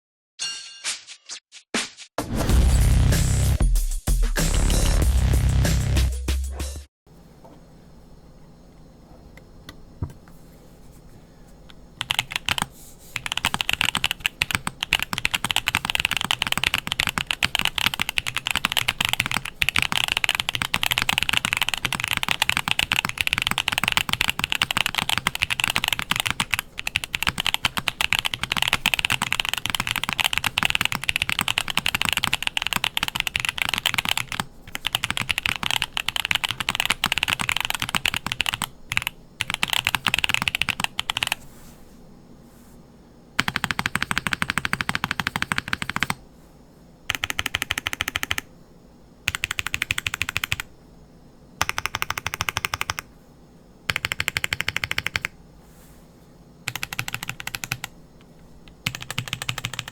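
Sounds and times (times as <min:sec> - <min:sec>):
mechanical keyboard typing: 0:12.0 - 0:41.4, 0:43.4 - 0:46.2, 0:47.1 - 0:48.5, 0:49.3 - 0:50.7, 0:51.6 - 0:53.1, 0:53.9 - 0:55.4, 0:56.7 - 0:57.9, 0:58.7 - 0:59.9.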